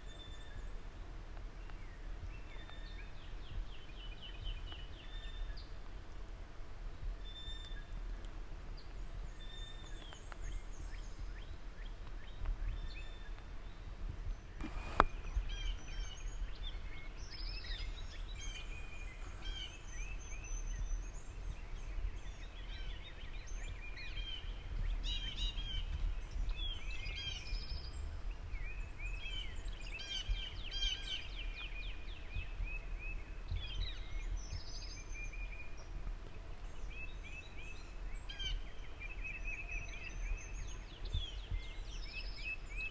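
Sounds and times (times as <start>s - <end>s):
songbirds dawn chorus: 0.0s - 6.2s, 7.0s - 42.9s
steady low rumble: 14.1s - 29.0s.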